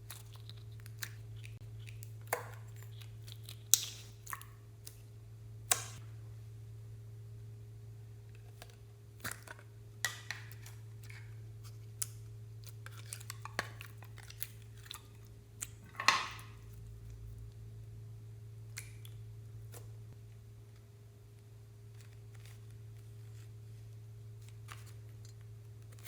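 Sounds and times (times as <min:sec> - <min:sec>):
steady low hum: 0:00.0 - 0:26.0
slime sticky clicks and crackles: 0:00.1 - 0:05.0.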